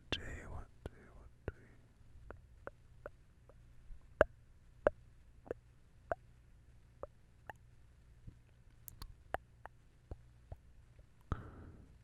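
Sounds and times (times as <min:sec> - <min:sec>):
wet mouth clicks: 0:08.9 - 0:09.4.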